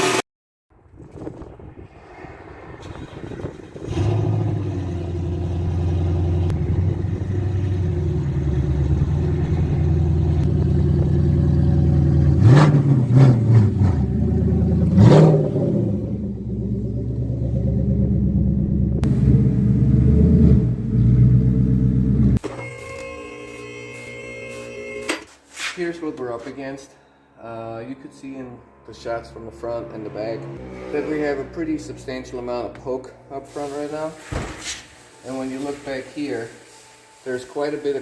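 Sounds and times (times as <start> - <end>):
car engine revving: 1.7 - 22.4, 29.2 - 32.8.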